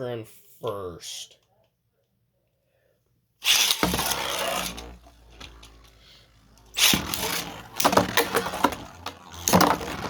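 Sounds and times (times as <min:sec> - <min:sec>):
spinning top humming: 0:03.4 - 0:10.0
spinning top launch rip: 0:03.4 - 0:10.0
spinning top launch whir: 0:03.4 - 0:10.0.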